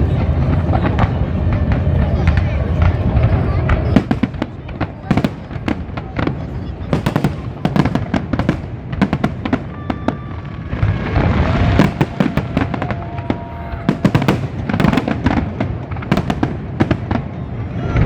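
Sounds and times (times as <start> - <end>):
fireworks crackling: 0.0 - 18.0
fireworks cracks and bangs: 0.0 - 18.0.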